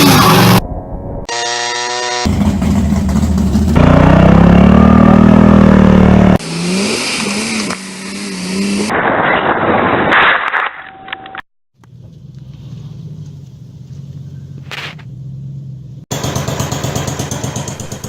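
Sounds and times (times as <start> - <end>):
vehicle engines running and revving: 2.2 - 9.0, 11.8 - 18.0.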